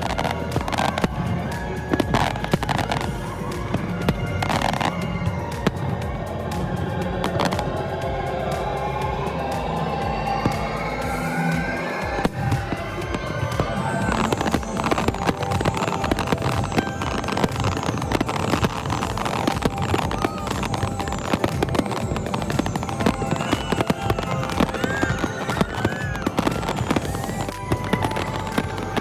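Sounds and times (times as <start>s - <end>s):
fireworks bangs and crackles: 0.0s - 29.0s
fireworks falling whistles: 0.0s - 29.0s
music: 0.0s - 29.0s.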